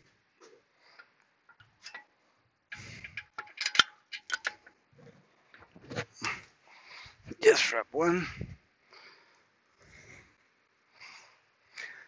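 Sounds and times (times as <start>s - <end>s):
metallic clicks and clinks: 2.7s - 4.7s.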